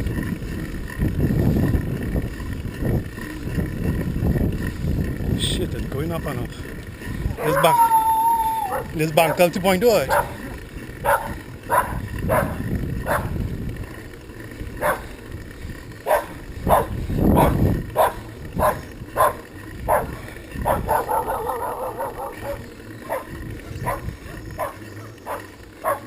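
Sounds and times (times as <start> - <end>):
steady low rumble: 0.0 - 26.0
dog barking: 10.1 - 10.4, 11.0 - 13.3, 14.8 - 15.1, 16.1 - 26.0.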